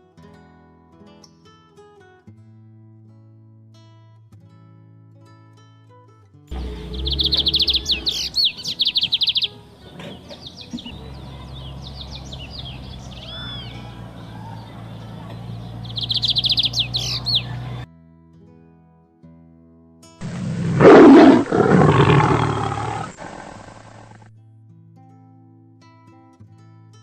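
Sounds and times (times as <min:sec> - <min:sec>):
bird chirping trills: 0:06.6 - 0:17.8, 0:20.2 - 0:24.1.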